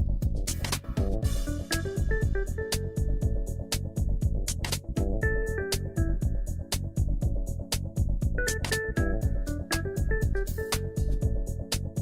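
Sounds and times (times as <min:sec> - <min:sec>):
upbeat music with drum beat: 0:00.0 - 0:12.0.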